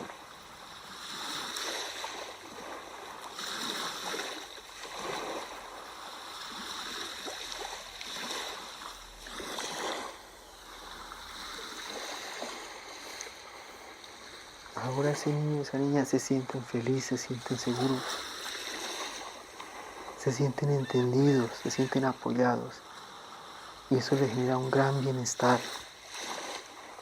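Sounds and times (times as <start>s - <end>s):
sea waves washing in: 0.0s - 27.0s.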